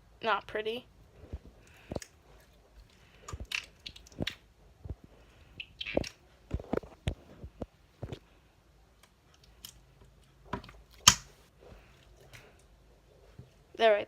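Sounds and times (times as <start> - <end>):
soft clicks and sticky pops: 1.3 - 8.2.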